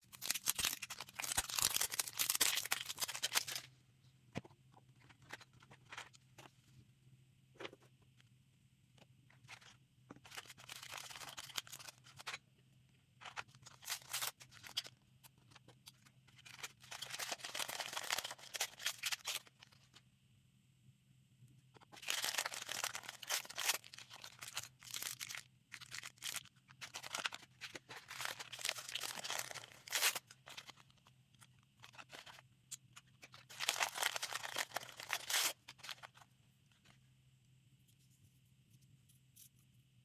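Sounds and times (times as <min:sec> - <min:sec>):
plastic packaging crinkling: 0:00.0 - 0:03.7, 0:09.4 - 0:12.4, 0:13.2 - 0:20.0, 0:21.8 - 0:36.8.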